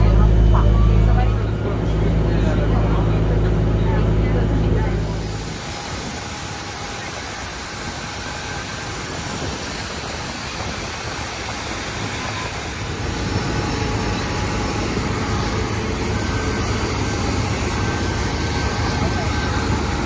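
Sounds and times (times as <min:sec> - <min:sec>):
deep rumble: 0:00.0 - 0:05.7
jet airliner noise: 0:00.0 - 0:20.0.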